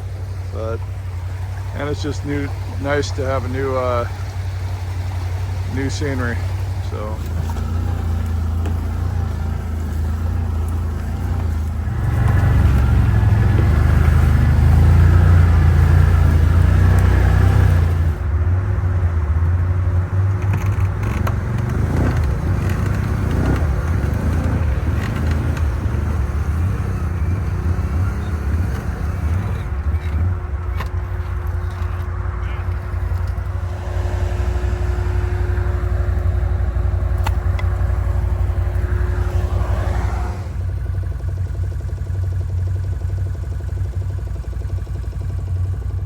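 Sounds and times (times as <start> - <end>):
vehicle knocks and rattles: 0.0 - 18.4, 19.2 - 46.0
off-road vehicle engine: 0.0 - 46.0.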